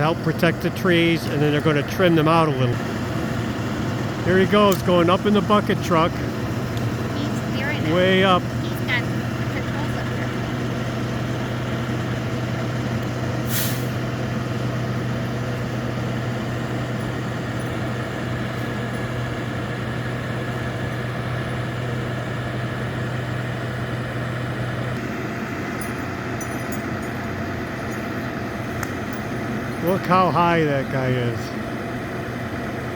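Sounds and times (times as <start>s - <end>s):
truck engine running: 0.0s - 32.9s
short hiss: 13.5s - 14.0s.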